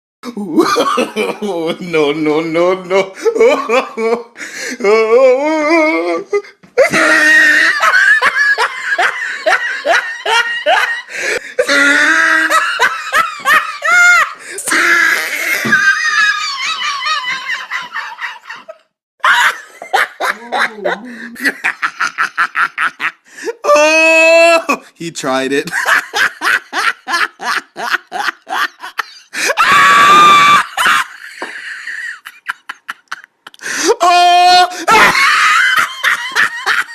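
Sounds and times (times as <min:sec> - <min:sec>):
high-pitched squeal of laughter: 0:06.8 - 0:08.2, 0:29.5 - 0:31.2
people laughing: 0:06.8 - 0:23.2, 0:25.7 - 0:36.9.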